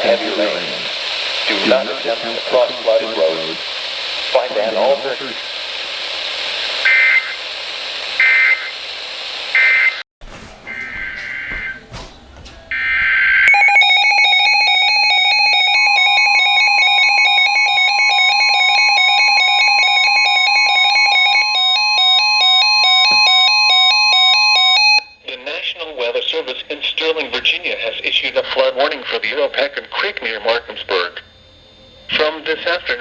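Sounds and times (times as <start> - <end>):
radio hiss: 0.0 - 10.0, 25.3 - 33.0.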